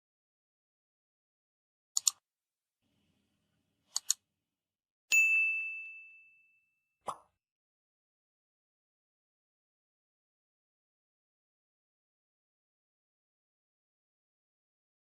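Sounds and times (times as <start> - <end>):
double clicks: 2.0 - 2.2
bell-like ding: 5.1 - 6.9.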